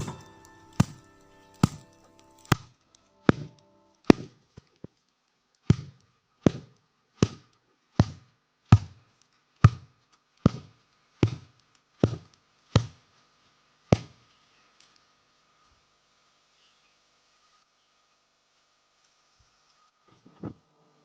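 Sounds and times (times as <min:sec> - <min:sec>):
sharp strikes with thuds: 0:00.0 - 0:02.6.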